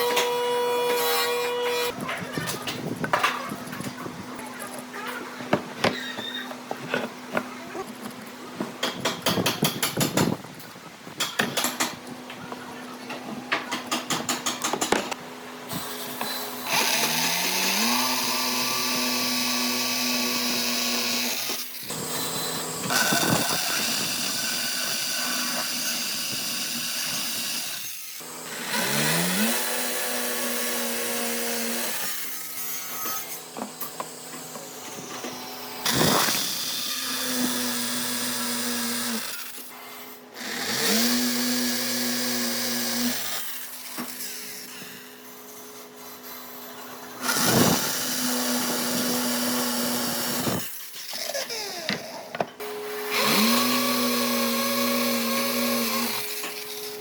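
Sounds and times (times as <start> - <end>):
power tool cutting wood: 0.0 - 2.7, 15.7 - 45.3, 46.1 - 57.0.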